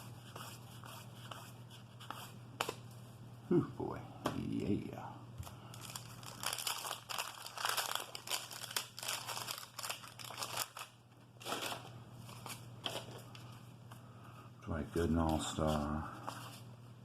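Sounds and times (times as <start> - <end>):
low steady hum: 0.0 - 17.0
wax paper wrapper tearing and crinkling: 5.7 - 13.0.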